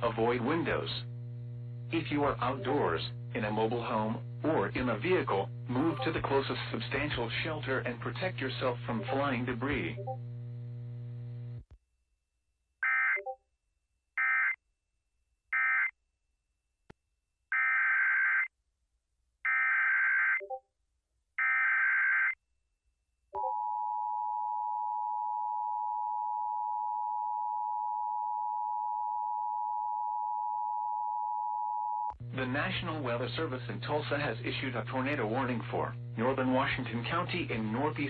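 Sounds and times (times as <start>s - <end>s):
low hum: 0.0s - 11.8s.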